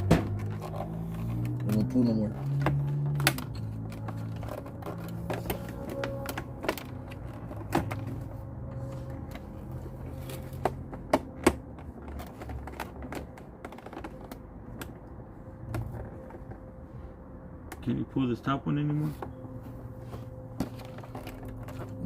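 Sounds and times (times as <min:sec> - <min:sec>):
hard parts clicking and tapping: 0:00.0 - 0:16.7.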